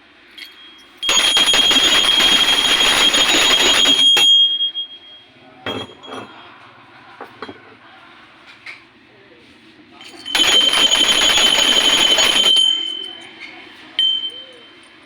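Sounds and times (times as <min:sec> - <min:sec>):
hand bell ringing: 0:00.4 - 0:06.4, 0:10.0 - 0:15.0.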